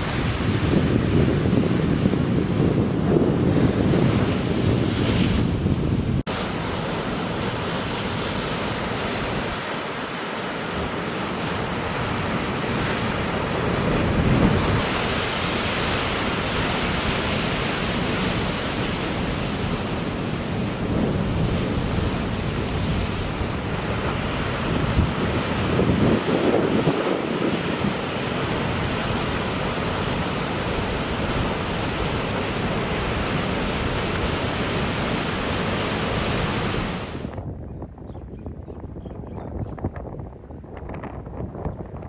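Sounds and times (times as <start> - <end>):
ocean surf breaking: 0.0 - 37.4
wind blowing across microphone: 0.0 - 42.0.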